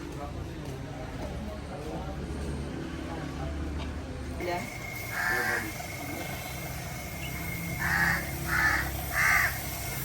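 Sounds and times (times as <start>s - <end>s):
bird giving harsh calls: 5.0s - 6.0s, 7.2s - 9.8s.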